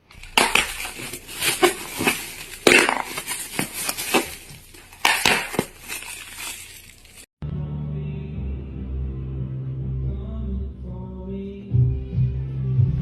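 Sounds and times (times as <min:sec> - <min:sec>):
hard objects clattering and knocking: 0:00.0 - 0:07.3.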